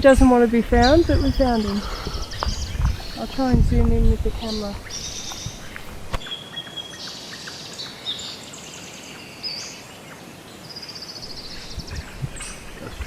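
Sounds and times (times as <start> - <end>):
birds chirping and whistling: 0.0 - 9.8, 11.2 - 13.0.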